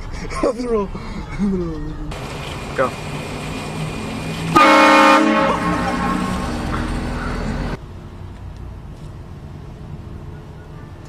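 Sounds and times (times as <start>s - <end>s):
steady vehicle rumble: 0.0s - 11.0s
train horn blast: 4.5s - 6.8s.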